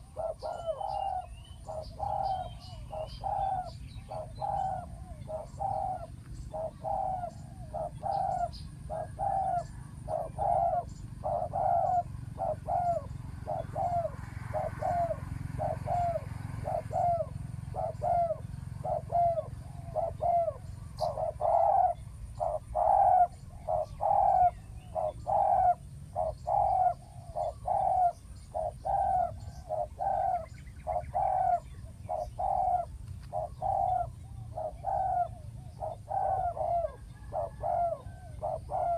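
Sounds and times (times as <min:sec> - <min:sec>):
dove cooing: 0:00.0 - 0:38.9.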